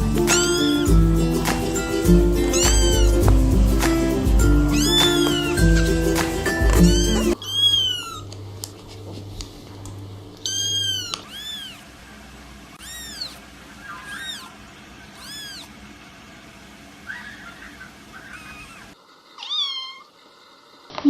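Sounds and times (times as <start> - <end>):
kittens meowing: 0.2 - 1.0, 2.4 - 3.3, 4.4 - 5.9, 6.7 - 8.3, 10.4 - 11.9, 12.8 - 15.7, 17.1 - 20.1.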